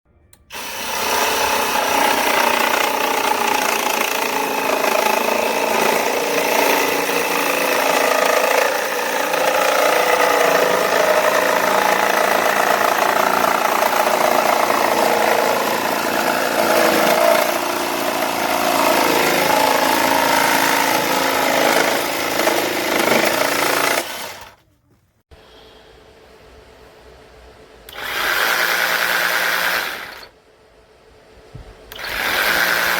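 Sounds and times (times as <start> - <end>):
cordless jigsaw running: 0.5 - 24.6, 27.9 - 30.3, 31.9 - 32.9.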